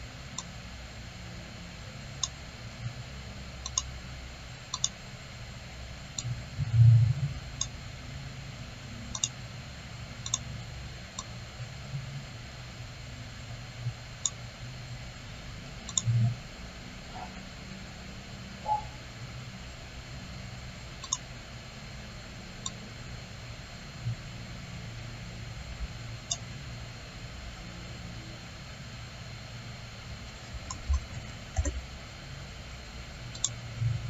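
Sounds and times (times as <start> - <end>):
steady low hum: 0.0 - 34.0
computer mouse clicks: 3.6 - 3.9, 4.7 - 5.0, 6.2 - 6.4, 9.1 - 9.4, 10.2 - 10.5, 14.2 - 14.4, 15.9 - 16.2, 21.0 - 21.3, 22.6 - 22.8, 30.6 - 31.8, 33.3 - 33.6.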